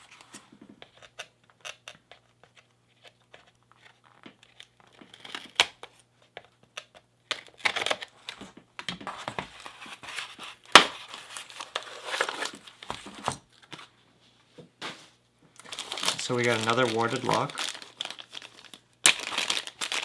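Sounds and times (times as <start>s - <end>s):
packaging crinkling and tearing: 9.1s - 13.8s, 15.6s - 20.0s.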